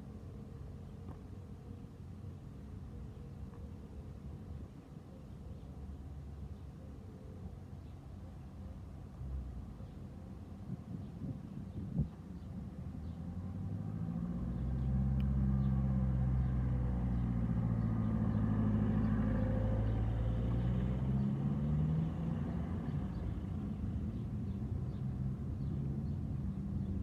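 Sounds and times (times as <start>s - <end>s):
vehicle engine passing: 13.0s - 27.0s.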